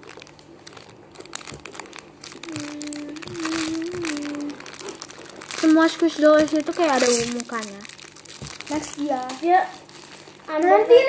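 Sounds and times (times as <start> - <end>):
plastic packaging crinkling: 0.0 - 11.0
person humming low note: 2.4 - 4.8.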